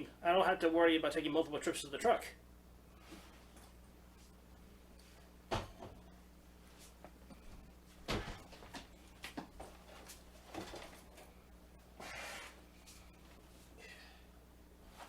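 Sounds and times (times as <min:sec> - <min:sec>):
bag scraping against wall: 0:12.0 - 0:12.6.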